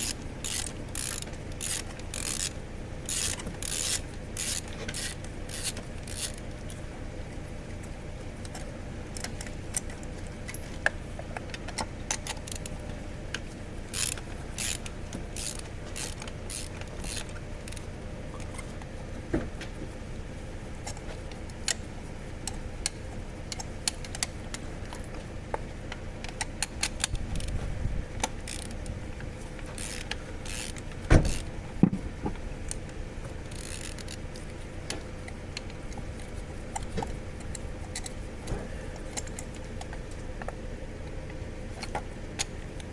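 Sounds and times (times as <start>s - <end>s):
low steady hum: 0.0s - 42.9s.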